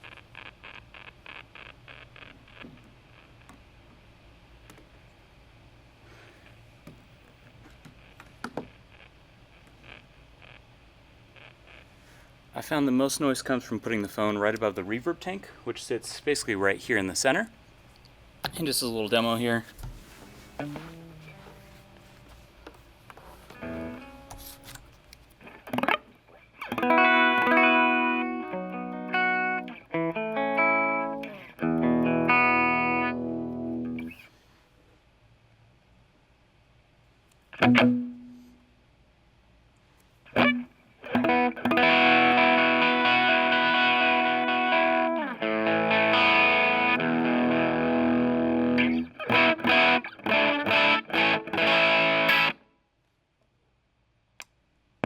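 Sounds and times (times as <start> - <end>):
faint amp hiss: 0.0 - 55.0
electric guitar chords strummed: 20.2 - 22.4, 23.6 - 24.6, 25.6 - 34.2, 37.6 - 38.5, 40.3 - 52.6.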